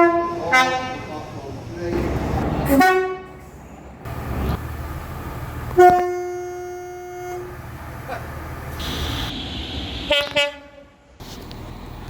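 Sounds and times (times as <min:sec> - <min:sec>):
train horn blast: 0:00.0 - 0:01.1, 0:02.7 - 0:03.4, 0:05.7 - 0:07.7, 0:08.8 - 0:11.0.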